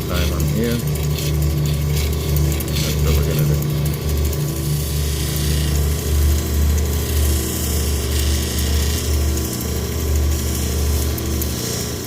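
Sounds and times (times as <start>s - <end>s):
stone rubbing on grinding wheel: 0.0s - 9.5s
grinding machine motor humming: 0.0s - 12.0s.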